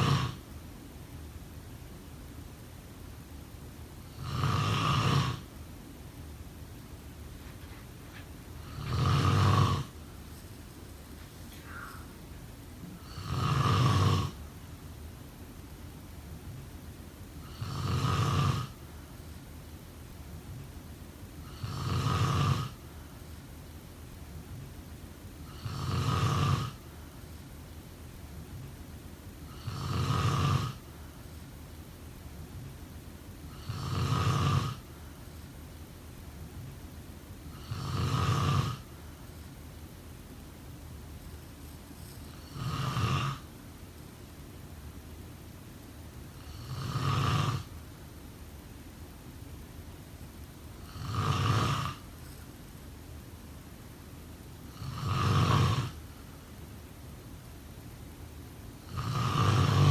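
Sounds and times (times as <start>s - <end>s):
person snoring: 0.0s - 0.4s, 4.1s - 5.5s, 8.6s - 10.0s, 11.5s - 12.1s, 12.9s - 14.4s, 17.4s - 18.8s, 21.4s - 22.8s, 25.5s - 26.8s, 29.5s - 30.9s, 33.5s - 34.9s, 37.6s - 38.9s, 42.0s - 43.5s, 46.4s - 47.7s, 50.8s - 52.4s, 54.7s - 56.0s, 58.8s - 59.9s.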